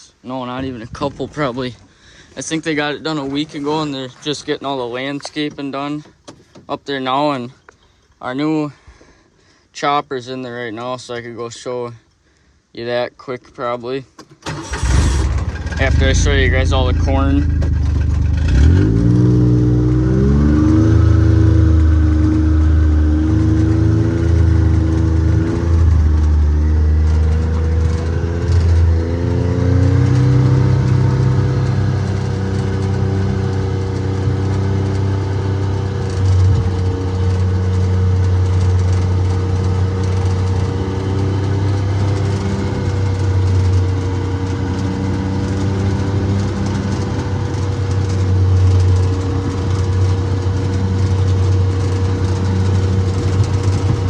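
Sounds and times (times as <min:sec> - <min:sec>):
vehicle engine running: 0:15.0 - 0:54.0.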